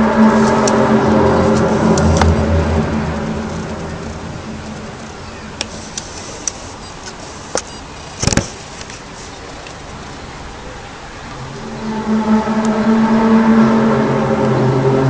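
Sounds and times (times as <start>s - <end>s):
city background noise: 0.0s - 15.0s.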